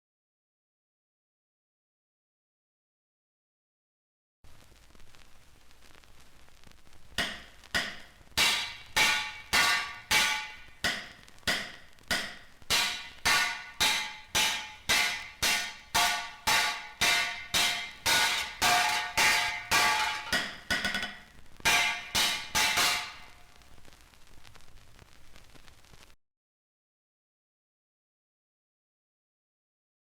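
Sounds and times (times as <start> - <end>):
faint hiss: 4.5 - 18.6, 22.3 - 26.2
hammer striking metal: 7.2 - 23.4.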